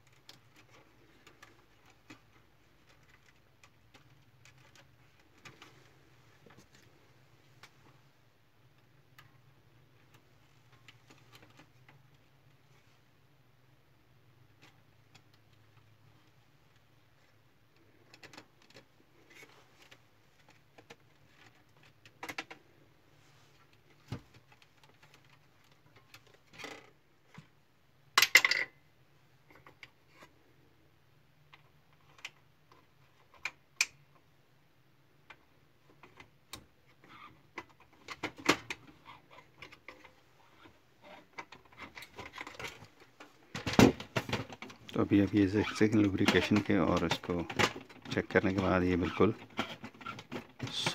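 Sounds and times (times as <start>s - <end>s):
clicks and clatter of small parts: 0.0s - 5.8s, 17.2s - 22.7s, 28.2s - 28.8s, 35.3s - 50.9s.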